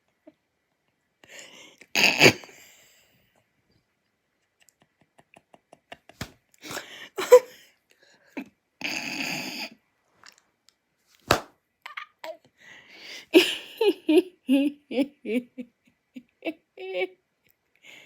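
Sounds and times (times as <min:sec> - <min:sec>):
person laughing: 0:04.8 - 0:07.6, 0:13.3 - 0:17.2
sharp slaps: 0:06.1 - 0:06.4, 0:11.2 - 0:11.5
wheezing breath: 0:06.6 - 0:08.4.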